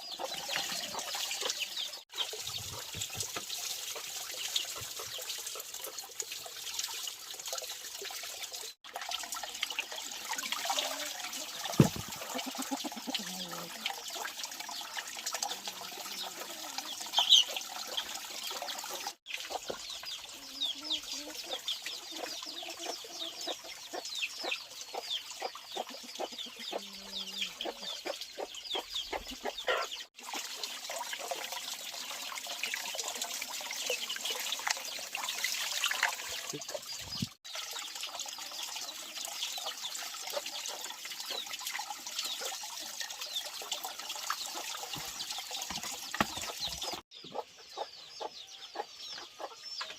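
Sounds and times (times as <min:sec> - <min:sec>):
chickens clucking: 0:20.8 - 0:30.0, 0:45.7 - 0:49.9.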